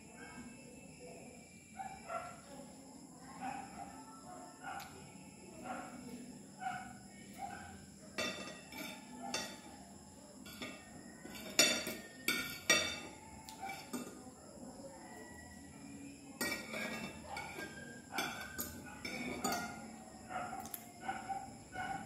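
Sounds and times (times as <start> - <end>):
cutlery clinking on a plate: 8.1 - 9.8, 10.4 - 14.3, 16.4 - 20.0.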